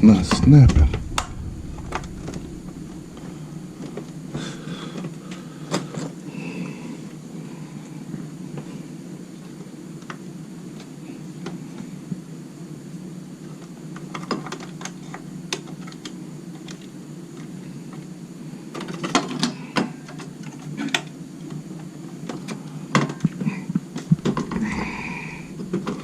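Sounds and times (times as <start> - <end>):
low hum: 0.0 - 4.8, 24.1 - 26.0.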